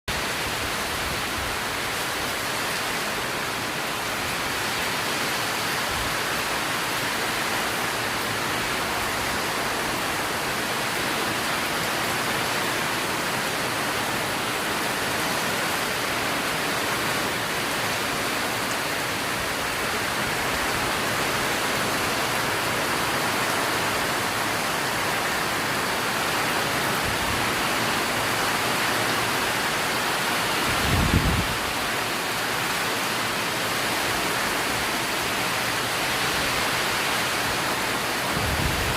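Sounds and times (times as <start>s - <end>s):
strong wind rushing: 30.6s - 31.8s, 38.2s - 38.9s.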